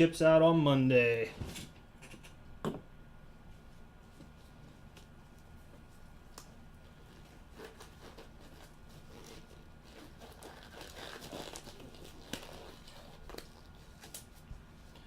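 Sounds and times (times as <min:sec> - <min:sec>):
packaging crinkling and tearing: 0:07.1 - 0:14.3.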